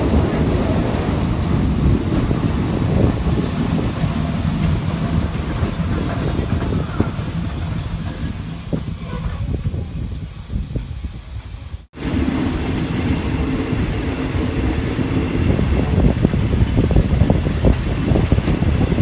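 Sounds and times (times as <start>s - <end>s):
train rumbling on rails: 0.0s - 19.0s
high-pitched wheel squeals: 6.1s - 9.6s.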